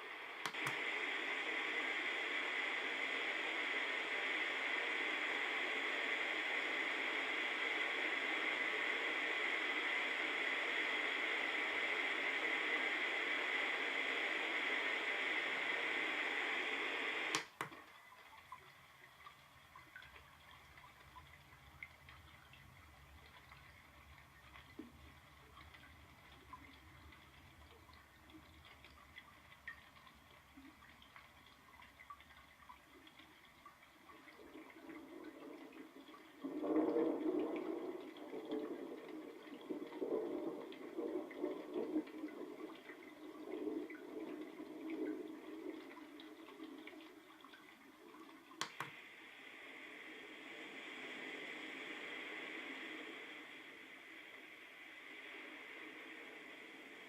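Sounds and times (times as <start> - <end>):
white noise from small speaker: 0.0 - 57.0
trickling water with drips: 17.5 - 49.0.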